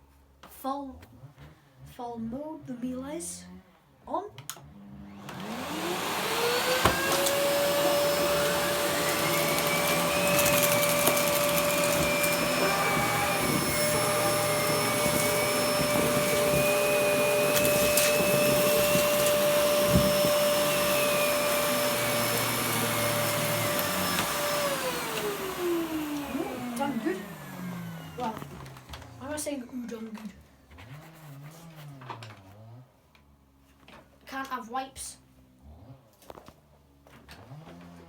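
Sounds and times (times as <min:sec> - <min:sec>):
vacuum cleaner motor whining: 0:04.6 - 0:32.8, 0:37.4 - 0:38.0.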